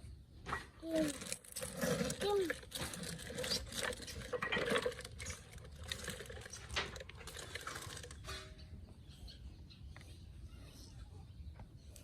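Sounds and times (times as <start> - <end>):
small hard objects clinking: 0.8 - 8.6.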